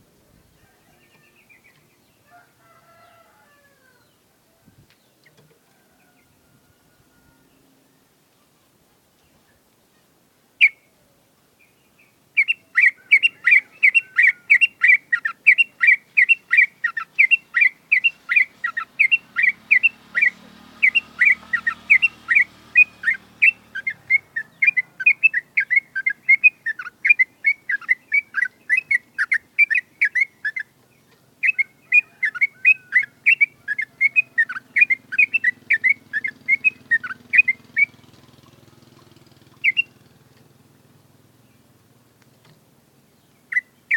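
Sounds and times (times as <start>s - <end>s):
bird singing rapid sharp notes: 11.6s - 43.9s.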